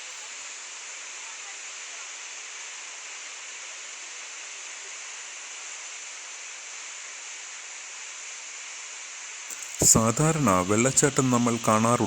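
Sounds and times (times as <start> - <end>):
distant waterfall rushing: 9.5 - 12.0.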